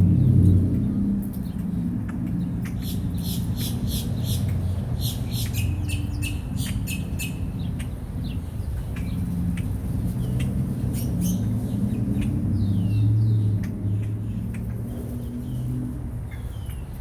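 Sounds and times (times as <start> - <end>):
bird chirping: 2.6 - 8.4.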